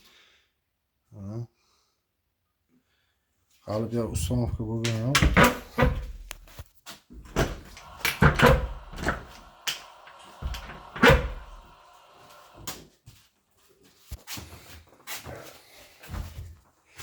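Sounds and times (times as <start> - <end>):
doors opening and shutting: 4.9 - 6.5, 7.2 - 12.8.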